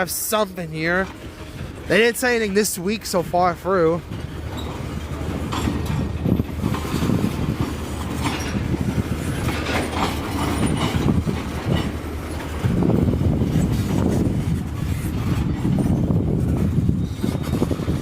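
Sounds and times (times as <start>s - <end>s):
wheels clicking over rail joints: 0.0s - 18.0s.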